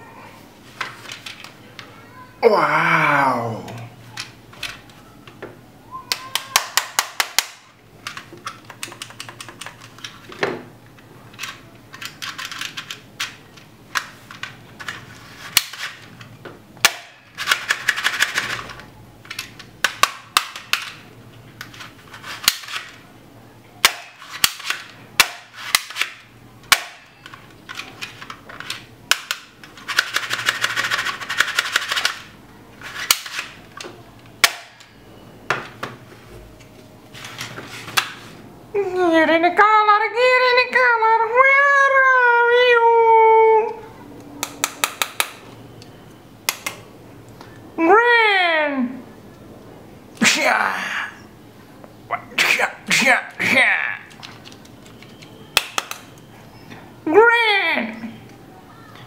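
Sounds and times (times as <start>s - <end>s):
toy gun shots: 16.8s - 17.6s, 23.8s - 27.2s, 34.4s - 34.9s.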